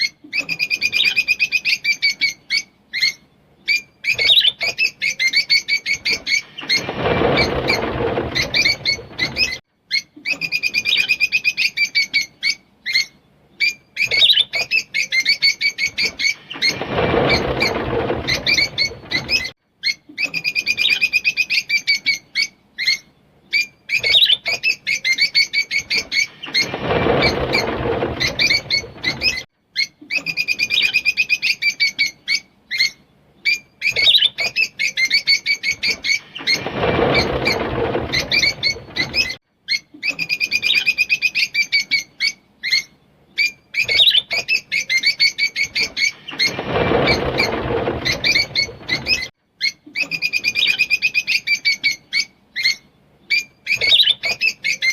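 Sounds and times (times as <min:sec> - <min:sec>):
lovebirds chirping and chattering: 0:00.0 - 0:54.9.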